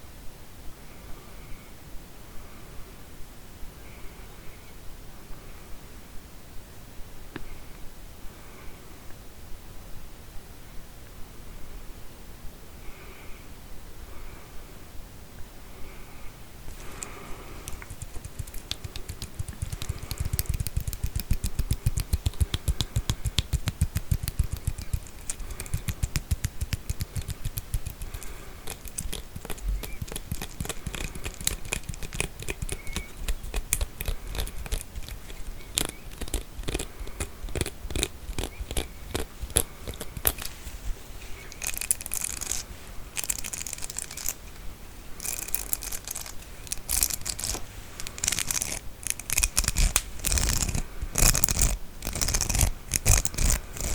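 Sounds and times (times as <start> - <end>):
comb teeth clicking: 16.8 - 40.6, 41.4 - 44.6, 45.2 - 53.9
scratchy rasping: 16.8 - 53.9.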